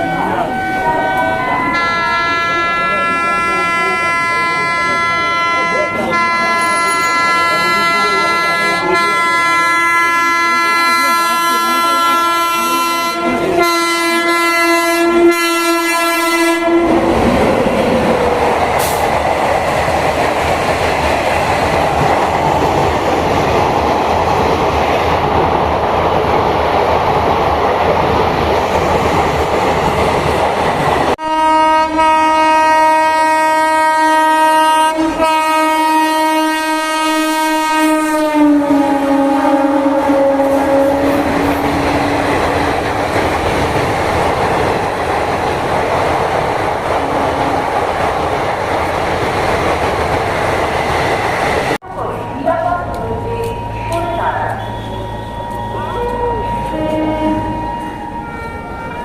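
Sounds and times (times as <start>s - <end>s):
locomotive air horn blaring: 0.0s - 17.2s, 31.2s - 42.6s, 53.8s - 59.0s
locomotive horn long blasts: 0.0s - 17.3s, 31.2s - 42.8s, 47.0s - 47.7s, 53.9s - 59.0s
train coaches rumbling past: 0.0s - 59.0s.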